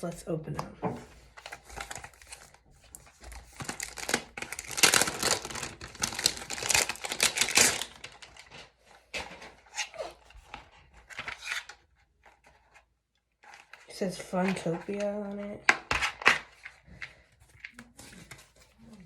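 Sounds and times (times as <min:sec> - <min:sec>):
packaging tearing and crinkling: 0:01.4 - 0:11.9.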